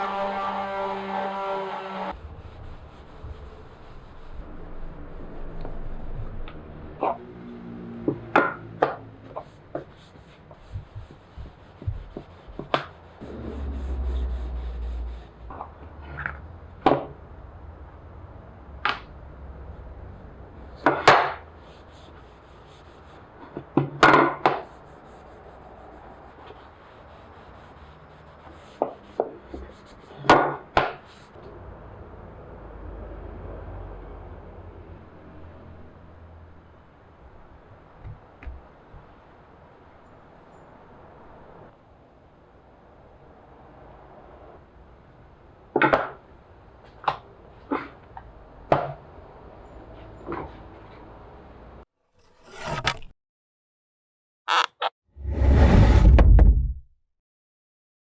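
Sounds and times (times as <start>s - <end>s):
wood rubbing: 9.3s - 15.8s, 52.2s - 53.1s, 54.5s - 54.9s.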